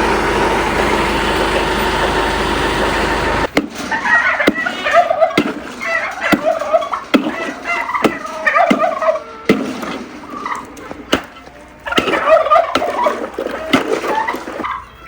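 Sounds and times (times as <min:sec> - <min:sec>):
turkeys gobbling: 0:00.0 - 0:15.0.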